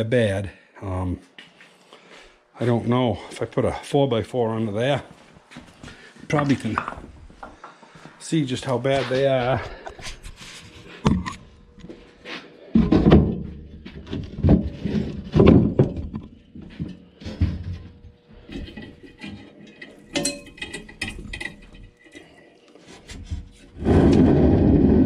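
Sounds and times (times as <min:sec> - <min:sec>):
machine running noise: 0:06.2 - 0:25.0
sawmill clunks and gear rattle: 0:12.8 - 0:22.0.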